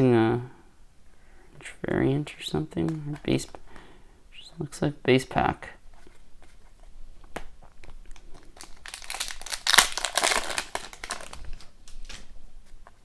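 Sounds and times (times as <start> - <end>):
foil wrapper crinkling: 6.5 - 12.4.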